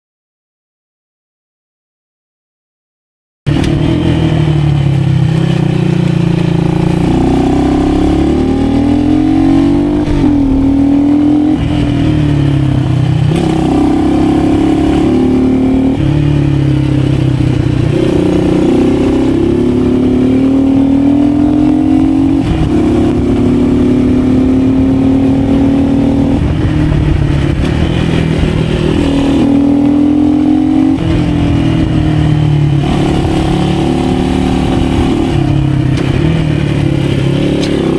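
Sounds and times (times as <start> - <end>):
motorcycle engine accelerating: 3.5 - 37.9
wind and road noise: 3.5 - 37.9.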